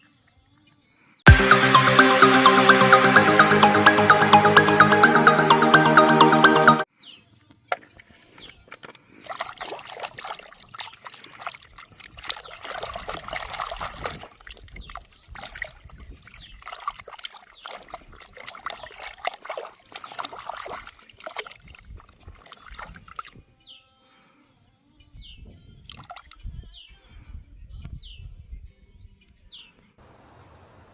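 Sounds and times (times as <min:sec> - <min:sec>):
water splashing and trickling: 0:07.8 - 0:23.4, 0:25.9 - 0:26.5.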